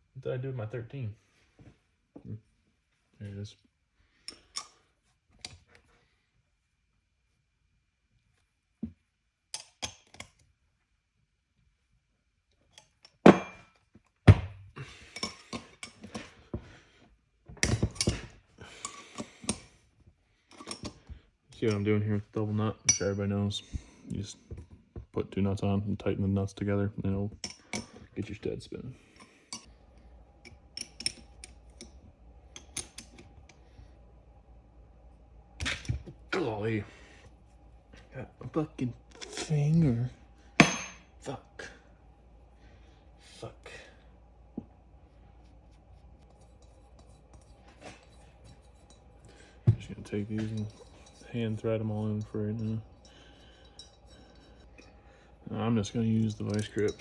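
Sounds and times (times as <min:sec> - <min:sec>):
metal wrench and nuts clinking: 0:56.0 - 0:57.0.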